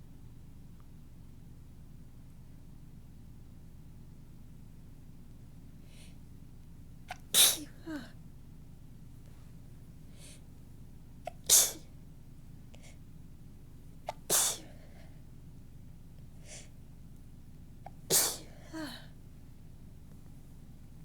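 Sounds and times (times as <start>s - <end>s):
woman sneezing: 7.1s - 8.1s, 11.3s - 11.8s, 14.1s - 14.7s, 18.1s - 19.1s
sharp intake of breath: 14.3s - 15.1s.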